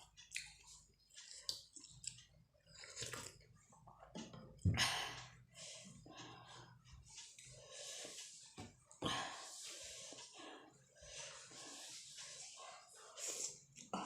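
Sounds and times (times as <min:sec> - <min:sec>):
chewing and wet mouth clicks: 0:00.2 - 0:00.6, 0:01.2 - 0:03.3.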